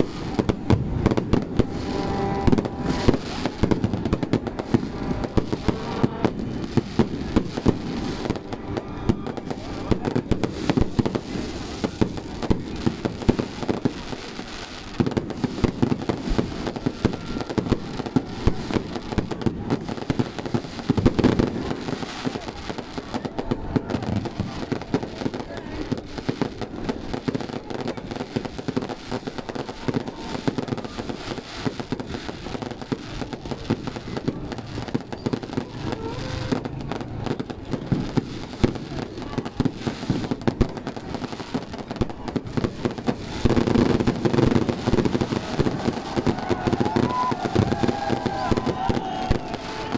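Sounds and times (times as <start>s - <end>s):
fireworks bursting: 0.0s - 49.9s.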